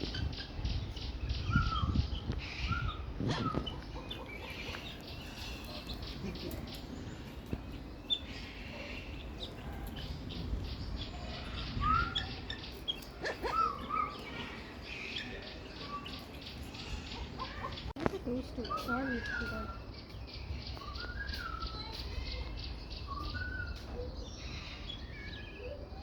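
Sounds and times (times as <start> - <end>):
birds chirping and twittering: 0.0 - 26.0.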